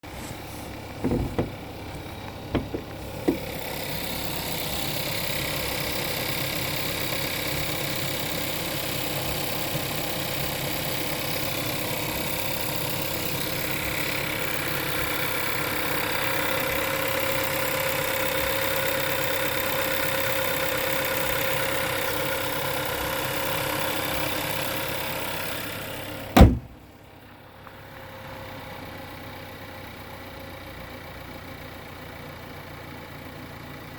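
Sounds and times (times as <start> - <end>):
car engine idling with rattle: 0.0 - 33.9
loud engine knock: 1.0 - 1.8, 2.4 - 4.2, 26.4 - 26.8.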